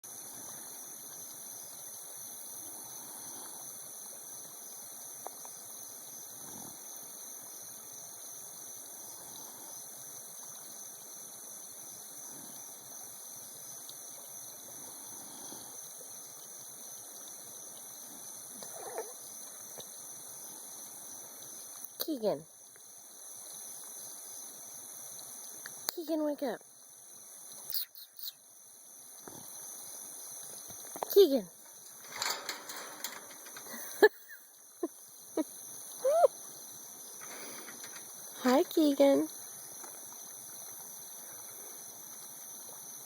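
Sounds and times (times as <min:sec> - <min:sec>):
horse snoring softly: 0:14.7 - 0:15.9.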